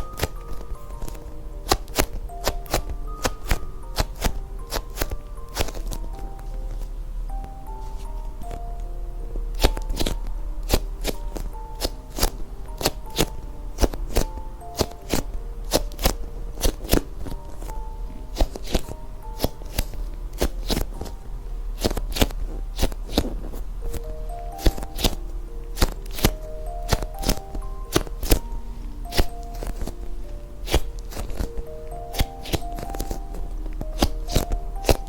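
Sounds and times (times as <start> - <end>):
music box melody: 0.0 - 35.0.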